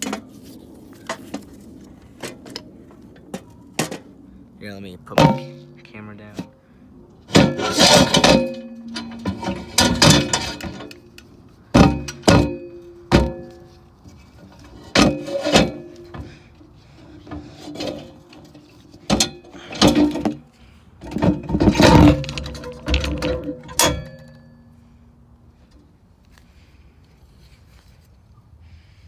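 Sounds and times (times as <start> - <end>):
metal engine parts knocking: 5.1 - 5.8, 7.3 - 13.7, 14.5 - 16.4, 17.1 - 24.5.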